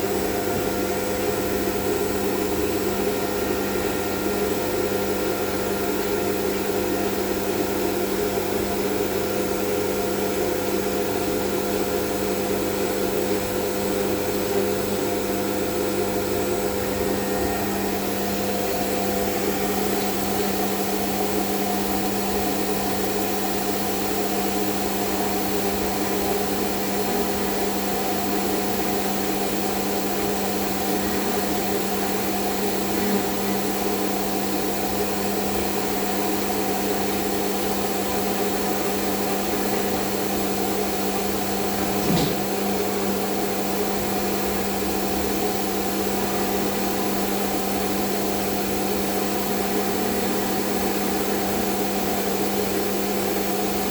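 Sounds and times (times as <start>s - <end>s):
machine motor humming: 16.6s - 21.6s
short knock: 41.9s - 42.5s.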